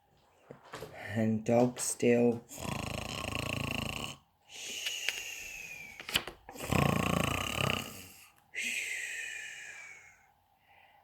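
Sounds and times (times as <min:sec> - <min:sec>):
person imitating snoring: 0:02.5 - 0:04.3, 0:06.5 - 0:08.3.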